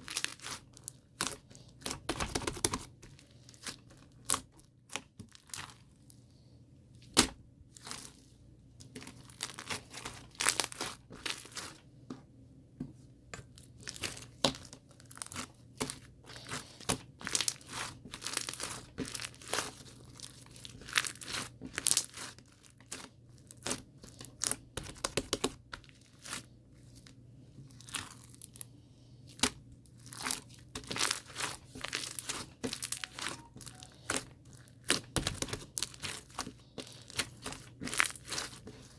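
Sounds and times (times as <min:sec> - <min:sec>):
material crinkling and rustling: 0:30.0 - 0:38.9.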